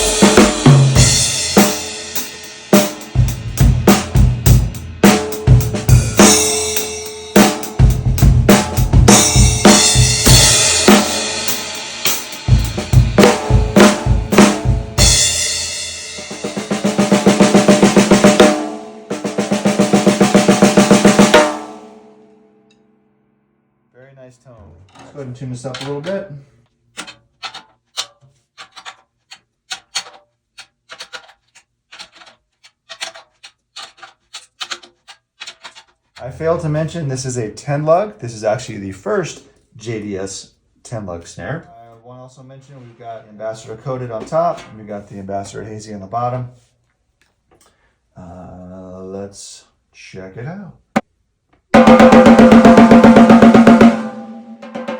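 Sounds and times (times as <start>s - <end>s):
snare drum roll: 0.0s - 15.5s, 16.2s - 21.7s, 51.8s - 54.9s
bass drum: 0.0s - 18.6s, 51.8s - 54.4s
snare drum groove: 0.0s - 21.7s, 51.7s - 54.9s.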